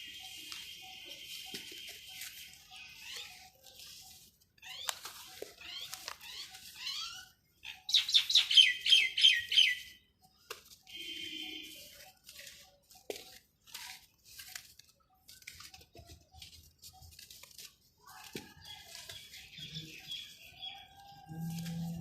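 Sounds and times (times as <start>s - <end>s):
bird chirping: 0.0s - 13.2s, 18.4s - 22.0s.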